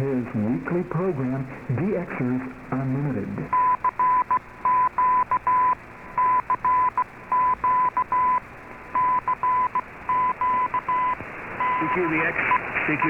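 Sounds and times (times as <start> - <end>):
radio band hiss: 0.0 - 4.6, 8.4 - 13.0
morse code tone: 3.5 - 8.4, 9.0 - 13.0.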